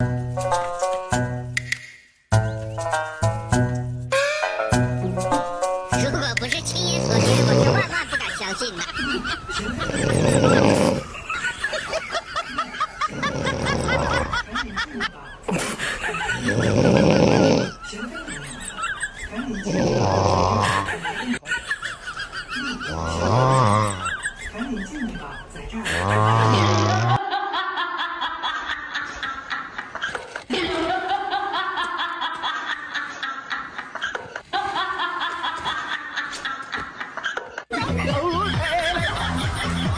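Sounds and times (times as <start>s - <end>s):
loud snoring breaths: 6.8s - 7.9s, 9.8s - 11.2s, 13.1s - 14.4s, 16.4s - 17.8s, 19.6s - 21.0s, 22.9s - 24.1s
rapid high-pitched laughter: 7.2s - 17.0s, 17.6s - 39.9s.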